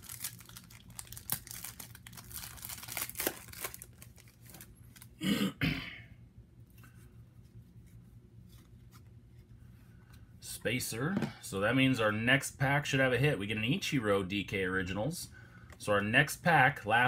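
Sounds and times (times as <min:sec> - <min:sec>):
cards rustling and crinkling: 0:00.0 - 0:05.2
person coughing: 0:05.2 - 0:06.2.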